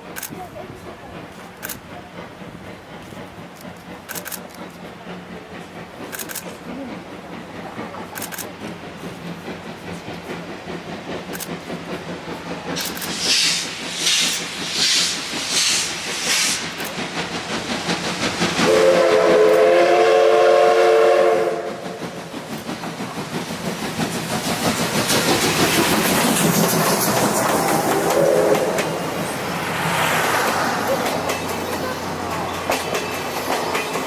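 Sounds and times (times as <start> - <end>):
steam locomotive exhaust beats: 0.0 - 34.0
train rumble and rail clatter: 0.0 - 34.0
steam whistle blast: 18.6 - 22.0, 27.9 - 29.0.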